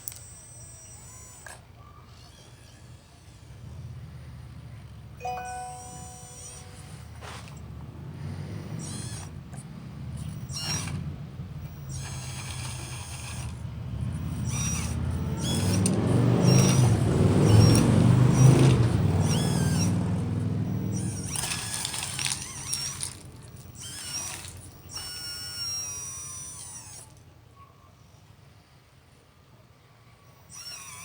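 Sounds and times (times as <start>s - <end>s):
model machine motor hum: 0.0s - 27.3s, 30.1s - 31.0s
high-pitched whines and squeaks: 5.2s - 7.6s, 10.2s - 11.0s, 11.7s - 13.6s, 14.2s - 27.1s, 30.4s - 31.0s.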